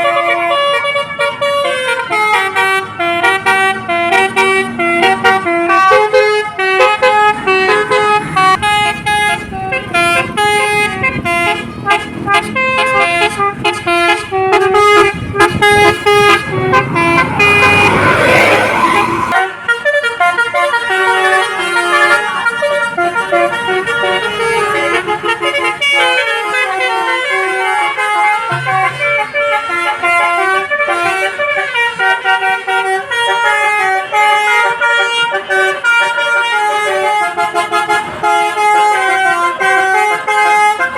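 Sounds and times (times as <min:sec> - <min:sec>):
bus musical horns playing tunes: 0:00.0 - 0:40.9
engine rumble: 0:07.0 - 0:19.4
loud rushing noise: 0:15.3 - 0:19.4.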